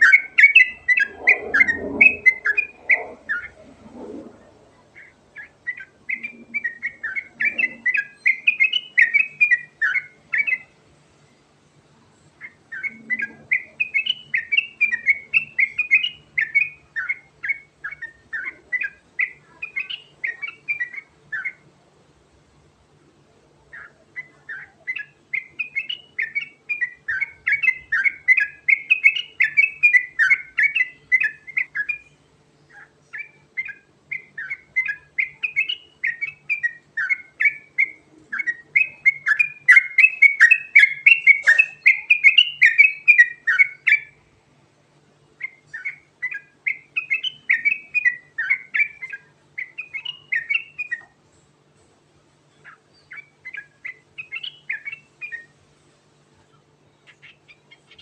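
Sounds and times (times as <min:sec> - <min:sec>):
bird singing chattering song: 0:00.0 - 0:11.5, 0:12.2 - 0:21.7, 0:23.5 - 0:44.3, 0:45.1 - 0:51.2, 0:52.4 - 0:55.6, 0:56.4 - 0:58.0.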